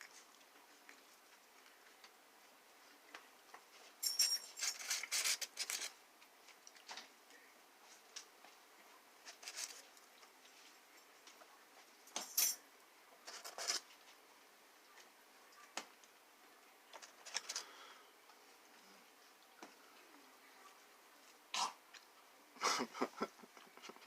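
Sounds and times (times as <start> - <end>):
wet mouth clicks: 21.5 - 22.1.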